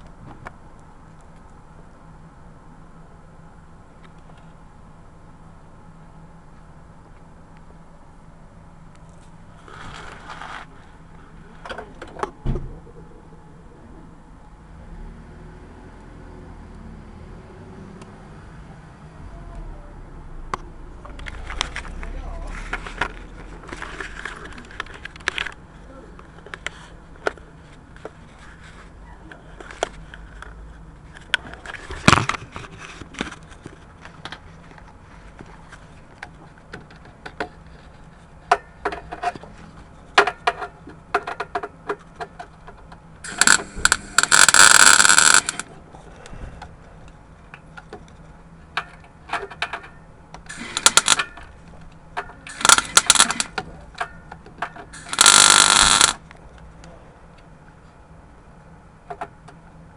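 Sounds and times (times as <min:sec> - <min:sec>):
welding arc bursts: 0:43.2 - 0:45.6, 0:50.5 - 0:51.2, 0:52.5 - 0:53.6, 0:55.0 - 0:56.2.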